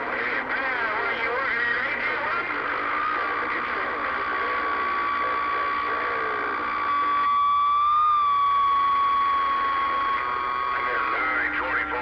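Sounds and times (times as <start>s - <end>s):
radio static: 0.0s - 12.0s
radio whistle tone: 2.1s - 12.0s.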